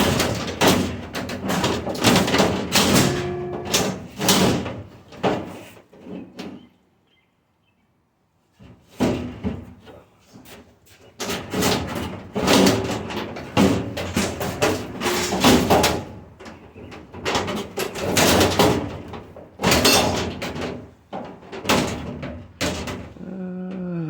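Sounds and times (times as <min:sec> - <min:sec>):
sheet metal banging and clattering: 0:00.0 - 0:05.6, 0:11.2 - 0:23.2.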